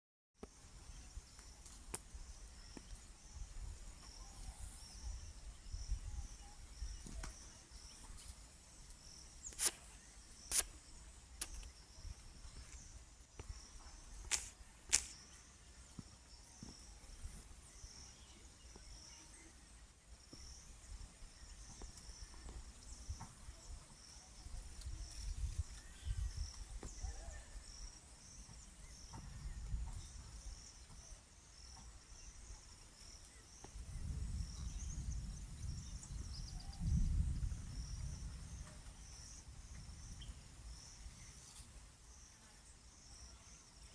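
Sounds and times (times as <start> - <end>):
low wind rumble: 33.7 - 41.4.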